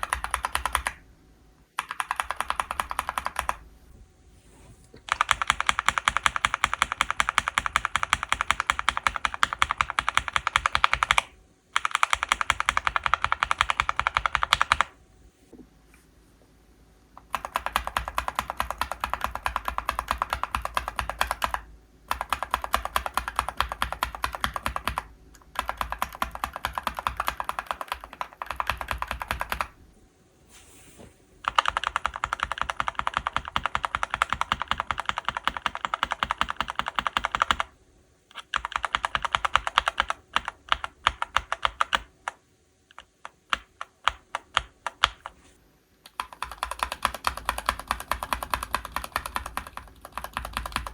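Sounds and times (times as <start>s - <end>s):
mechanical keyboard typing: 0.0s - 1.0s, 1.8s - 3.6s, 5.0s - 15.0s, 17.2s - 29.8s, 31.4s - 45.4s, 46.1s - 50.9s.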